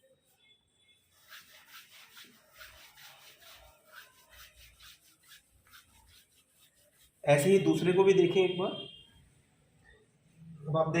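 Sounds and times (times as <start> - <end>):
hands rubbing skin: 1.2 - 7.6.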